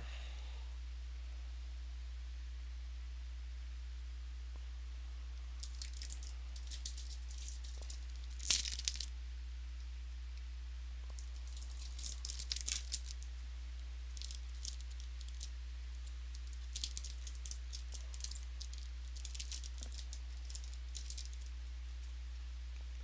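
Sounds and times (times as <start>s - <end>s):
low electrical hum: 0.0s - 23.0s
cards being flipped through: 5.6s - 9.1s.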